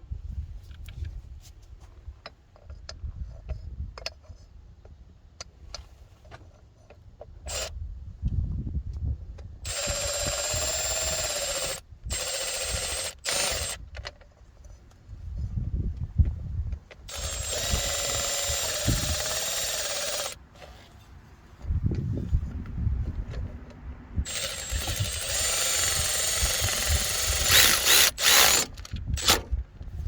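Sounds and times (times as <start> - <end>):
electric ratchet whirring: 9.6 - 13.8, 17.1 - 20.4, 24.2 - 29.6
metal parts clicking and tapping: 24.3 - 29.6.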